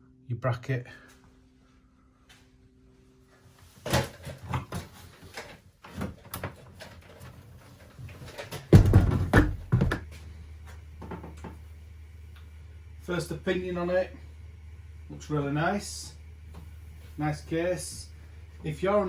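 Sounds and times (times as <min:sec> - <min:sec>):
steady low hum: 0:00.0 - 0:19.0
heavy thumps: 0:08.7 - 0:10.1.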